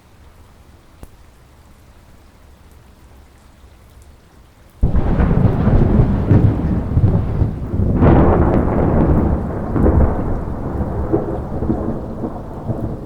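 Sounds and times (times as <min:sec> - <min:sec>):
soft steady rain: 0:00.0 - 0:13.0
thunder clap and rumble: 0:04.8 - 0:13.0.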